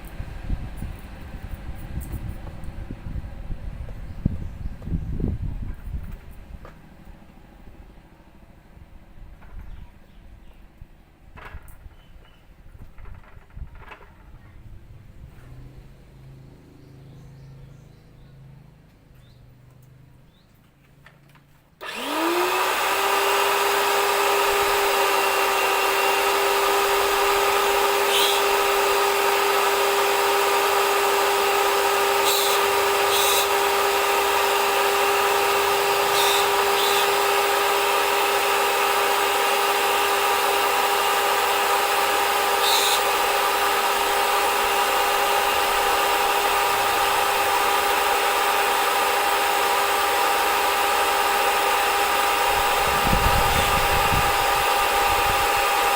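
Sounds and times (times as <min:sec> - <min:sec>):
pressure washer motor whining: 0:21.8 - 0:55.9.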